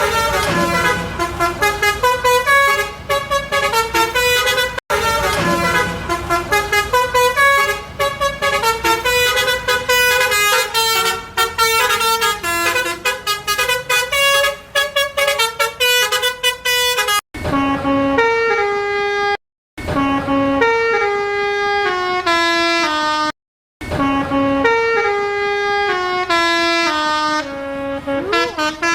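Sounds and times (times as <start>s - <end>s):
low engine rumble: 0.0s - 15.8s
musical air horn melodies: 0.0s - 19.4s, 20.0s - 23.3s, 24.0s - 28.9s.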